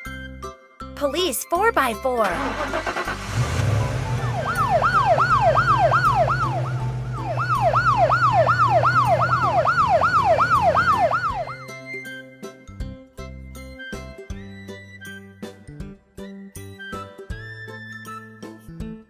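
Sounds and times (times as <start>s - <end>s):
police siren yelping: 2.4s - 11.6s
low engine hum: 2.5s - 11.5s.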